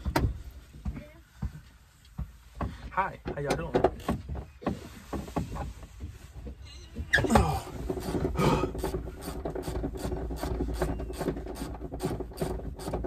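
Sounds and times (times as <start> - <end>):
rubbing and scraping: 3.9 - 13.0
car seat squeak: 7.0 - 12.8.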